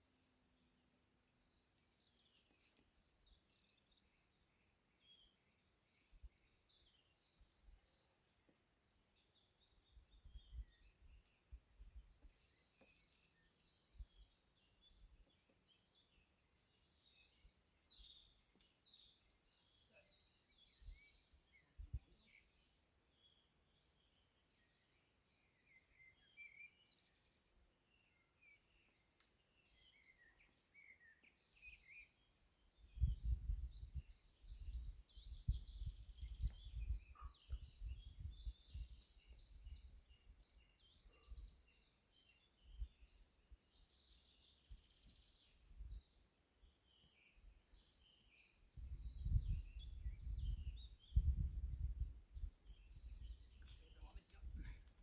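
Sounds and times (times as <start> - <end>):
birds chirping and singing: 9.2 - 22.6, 29.6 - 55.0
wind gusts on microphone: 32.9 - 40.0, 48.8 - 54.8.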